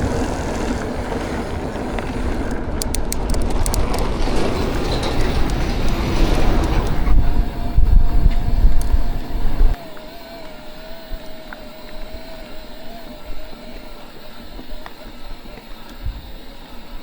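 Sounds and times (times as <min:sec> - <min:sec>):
bike rattling rumble: 0:00.0 - 0:09.9
wind buffeting microphone: 0:00.0 - 0:17.0
faint steady whine: 0:00.2 - 0:17.0.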